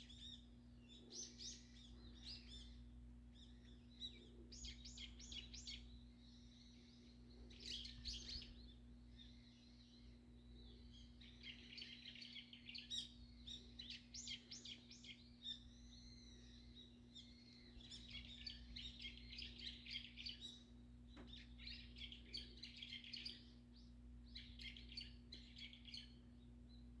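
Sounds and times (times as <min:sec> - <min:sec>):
birds chirping: 0:00.0 - 0:27.0.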